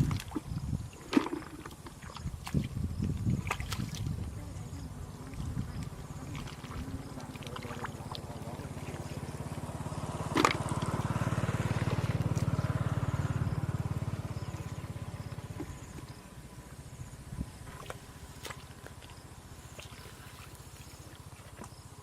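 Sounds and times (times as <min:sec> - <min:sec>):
small engine running: 0:04.6 - 0:21.6.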